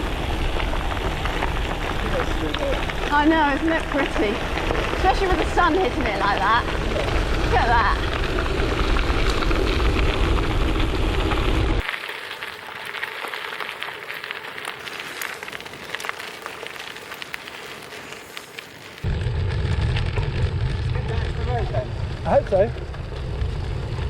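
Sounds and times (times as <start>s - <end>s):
wind rumble on microphone: 0.0s - 11.8s, 19.0s - 24.0s
bicycle tyres crunching gravel: 0.0s - 24.0s.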